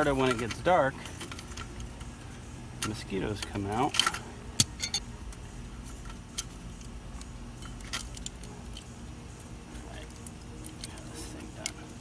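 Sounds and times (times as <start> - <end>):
low steady background noise: 0.0 - 12.0
metallic clinks of hand tools: 10.2 - 12.0.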